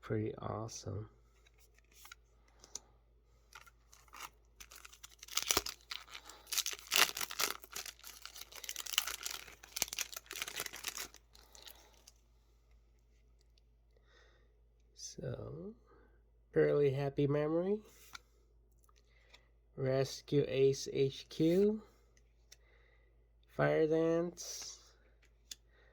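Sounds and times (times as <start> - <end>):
foil wrapper tearing and crinkling: 3.5 - 12.1.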